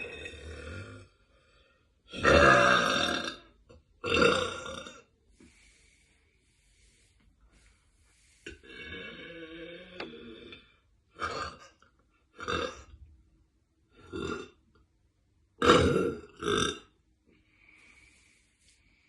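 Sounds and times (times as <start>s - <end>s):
woman burping: 0.0s - 1.0s, 2.1s - 5.1s, 11.2s - 11.8s, 12.4s - 13.0s, 14.0s - 14.6s, 15.6s - 16.9s.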